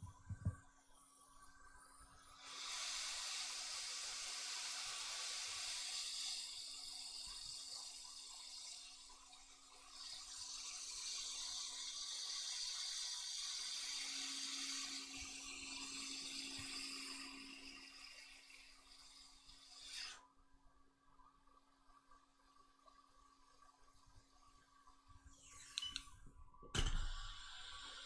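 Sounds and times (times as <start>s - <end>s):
hot-air gun hissing: 2.4s - 20.2s, 26.8s - 28.0s.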